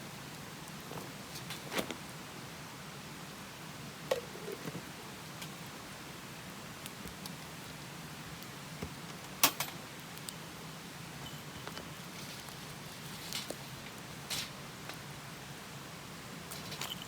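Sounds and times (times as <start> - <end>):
steady hiss: 0.0 - 17.0
wood fire crackling: 4.2 - 15.6.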